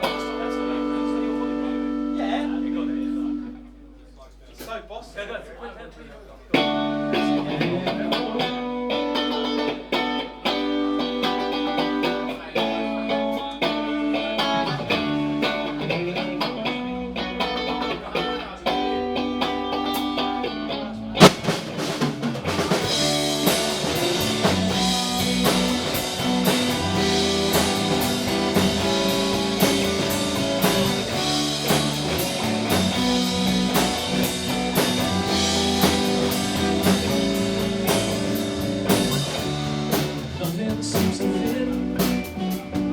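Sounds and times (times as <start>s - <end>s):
drums: 0.0s - 2.7s, 6.4s - 42.9s
live rock band playing: 0.0s - 3.6s, 6.6s - 42.9s
bass guitar: 0.0s - 4.0s, 6.5s - 42.9s
electric guitar notes: 0.0s - 4.0s, 6.6s - 42.9s.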